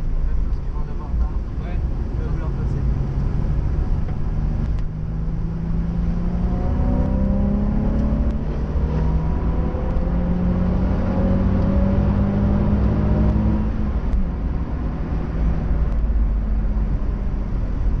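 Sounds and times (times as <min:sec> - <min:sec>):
car engine running: 0:00.0 - 0:18.0
road noise: 0:00.0 - 0:18.0.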